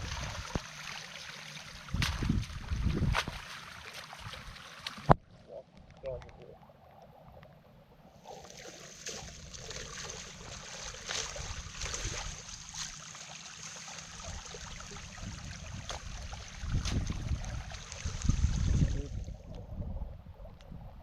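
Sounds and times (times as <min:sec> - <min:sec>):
short water splashes: 0:00.0 - 0:05.2, 0:08.2 - 0:19.4
water trickling and splashing: 0:00.0 - 0:05.2, 0:08.2 - 0:19.6.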